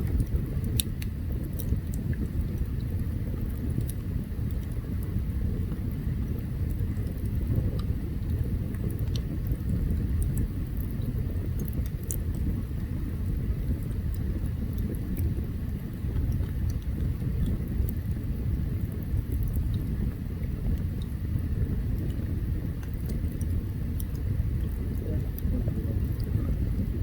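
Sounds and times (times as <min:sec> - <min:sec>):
campfire crackling: 0:00.0 - 0:27.0.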